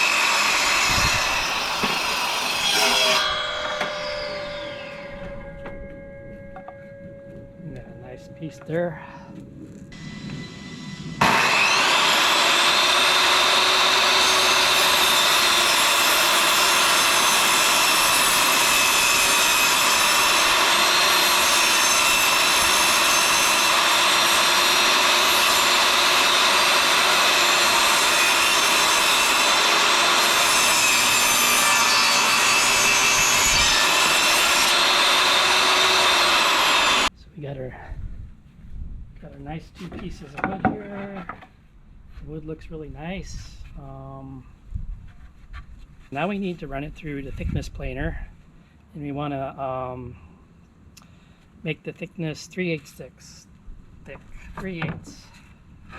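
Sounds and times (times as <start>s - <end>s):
table saw cutting wood: 0.0s - 5.8s, 9.9s - 37.1s.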